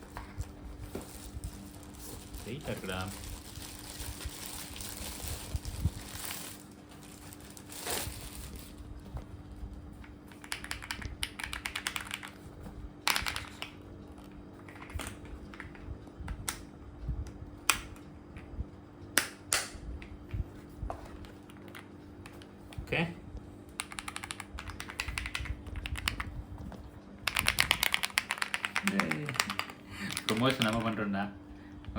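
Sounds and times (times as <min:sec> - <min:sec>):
mechanical keyboard keys clacking: 0:10.3 - 0:12.4, 0:13.1 - 0:13.7, 0:23.8 - 0:26.3, 0:27.2 - 0:31.0.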